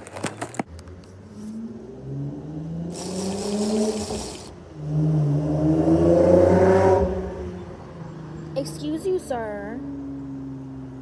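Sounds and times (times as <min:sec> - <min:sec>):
vehicle engine accelerating: 0:00.9 - 0:08.6.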